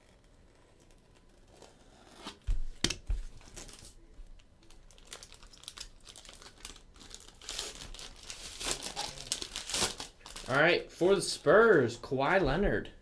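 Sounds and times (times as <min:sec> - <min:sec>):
plastic wrapper crinkling and tearing: 0:03.0 - 0:11.7.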